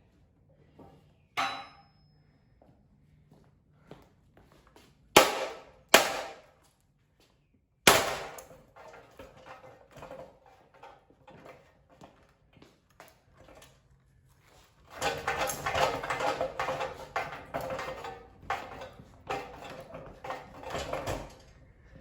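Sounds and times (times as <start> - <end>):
ceiling fan parts struck hard: 1.4 - 2.0, 5.2 - 6.5, 7.9 - 8.6
rattling and clattering: 14.8 - 21.8.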